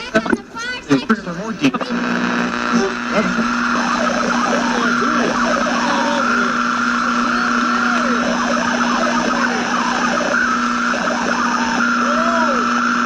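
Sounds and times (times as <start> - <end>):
radio static hiss: 0.0 - 13.0
low hum: 1.2 - 13.0
whistles rising and falling: 3.7 - 13.0.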